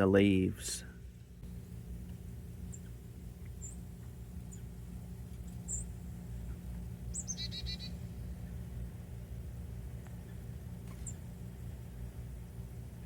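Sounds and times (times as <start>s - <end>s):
birds chirping: 1.4s - 9.1s.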